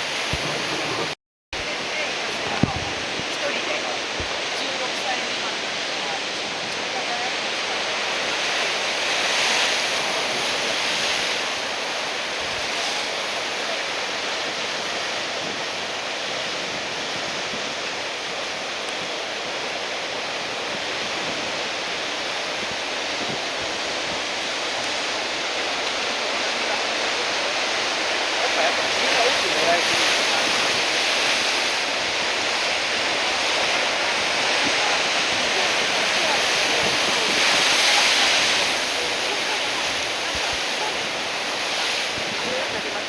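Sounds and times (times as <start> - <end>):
large waves breaking: 0.0 - 43.0.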